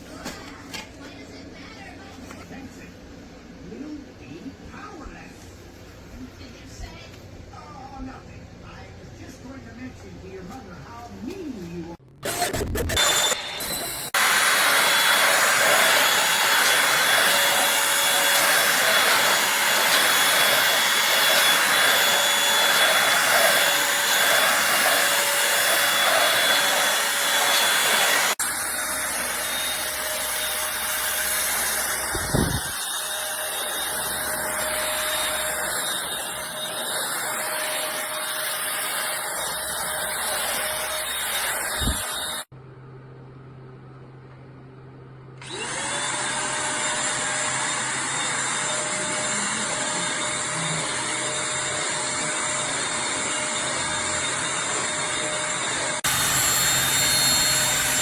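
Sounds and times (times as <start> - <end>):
stick vacuum running: 12.1 - 42.5, 45.4 - 58.0.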